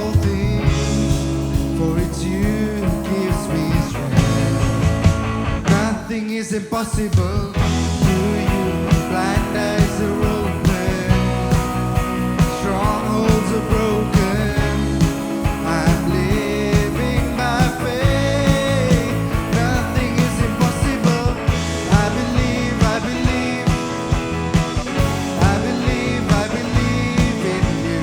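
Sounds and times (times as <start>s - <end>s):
worship band playing: 0.0s - 28.0s.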